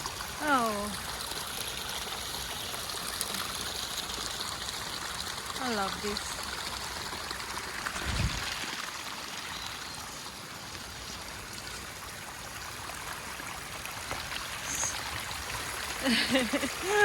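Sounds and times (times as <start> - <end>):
stream rushing: 7.4 - 17.0.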